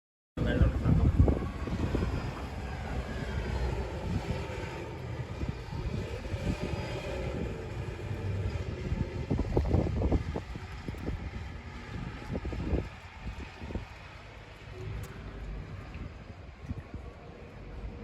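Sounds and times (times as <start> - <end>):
wind buffeting microphone: 0.4 - 18.0.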